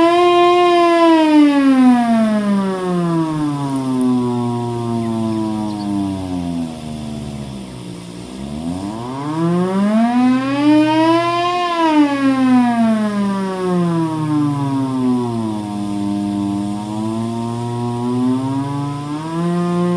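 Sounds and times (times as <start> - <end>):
hand-crank siren wailing: 0.0 - 19.9
steady low hum: 0.0 - 19.9.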